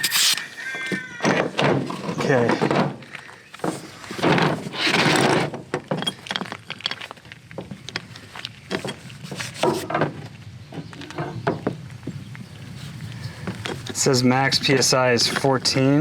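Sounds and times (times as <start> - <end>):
compressed air hissing into tire: 0.0 - 0.6
tools clicking and rattling: 4.9 - 8.1.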